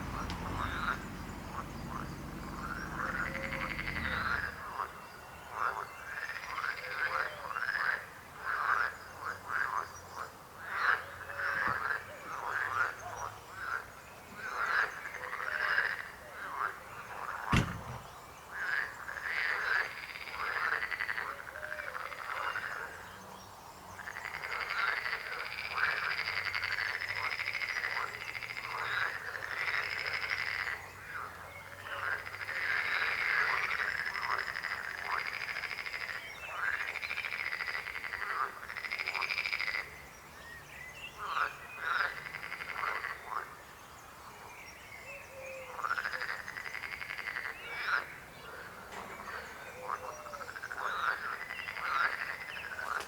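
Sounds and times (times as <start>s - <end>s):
frogs croaking: 0.0s - 53.0s.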